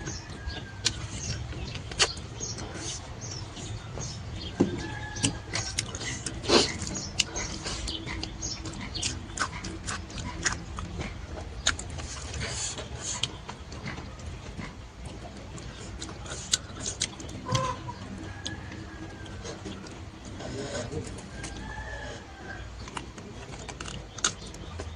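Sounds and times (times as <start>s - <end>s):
chewing and lip-smacking: 0.0s - 24.9s.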